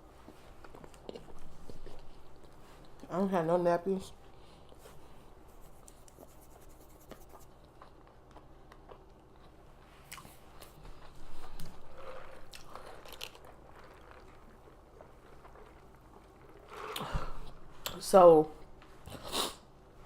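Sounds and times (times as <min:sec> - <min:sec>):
chewing a burger: 0:05.7 - 0:17.1.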